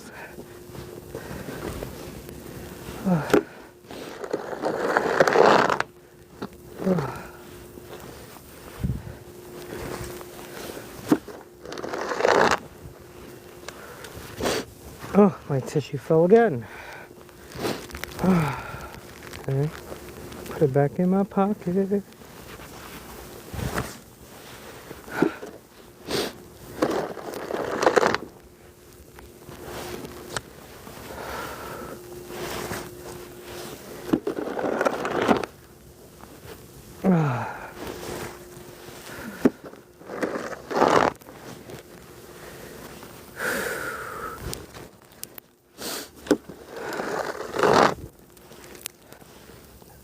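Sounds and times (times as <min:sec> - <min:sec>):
hard breathing: 0:00.0 - 0:04.2, 0:16.6 - 0:19.3, 0:31.0 - 0:32.8, 0:42.2 - 0:44.6
snow shovel scraping snow: 0:00.4 - 0:16.6, 0:21.4 - 0:28.3, 0:29.5 - 0:35.6, 0:36.2 - 0:44.9, 0:45.8 - 0:49.6
person sniffing: 0:14.4 - 0:14.7, 0:25.1 - 0:26.4, 0:45.8 - 0:46.2.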